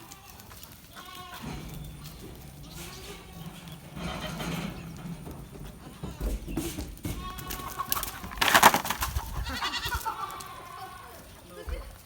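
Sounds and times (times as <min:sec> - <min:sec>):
goats bleating: 0:00.0 - 0:06.2, 0:07.0 - 0:11.9.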